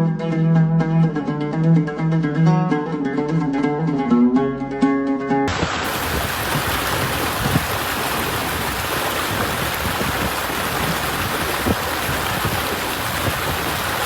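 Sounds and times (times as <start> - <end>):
heavy rain: 5.5 - 14.0
running water: 5.5 - 14.0.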